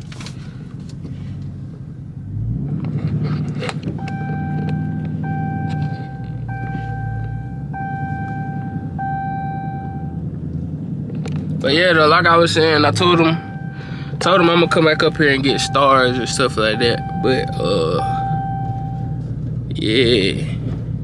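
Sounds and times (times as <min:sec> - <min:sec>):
car engine rumbling: 0:00.0 - 0:21.0
car warning chime: 0:03.9 - 0:10.2, 0:11.6 - 0:20.4.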